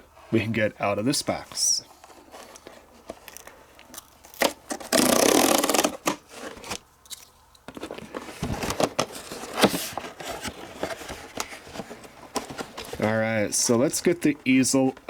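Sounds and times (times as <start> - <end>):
card rustling and scraping: 1.3 - 13.9
packaging tearing: 2.5 - 6.8.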